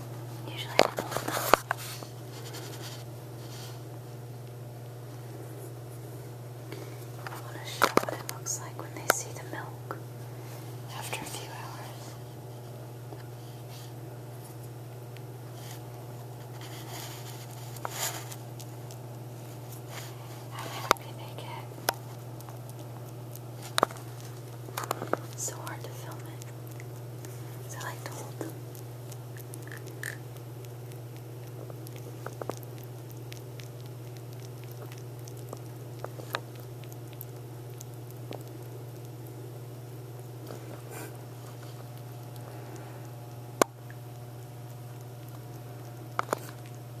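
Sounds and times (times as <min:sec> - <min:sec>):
steady low hum: 0:00.0 - 0:47.0
small animal chewing and scratching: 0:00.3 - 0:47.0
animal chewing clicks: 0:20.6 - 0:21.1, 0:21.7 - 0:39.4, 0:43.6 - 0:46.8.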